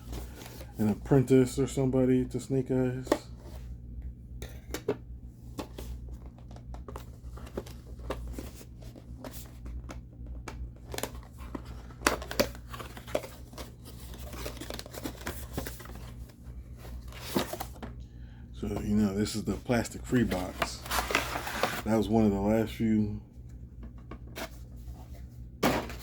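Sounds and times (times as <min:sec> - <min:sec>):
cardboard packaging tearing and crinkling: 0:10.9 - 0:16.0, 0:20.2 - 0:22.0.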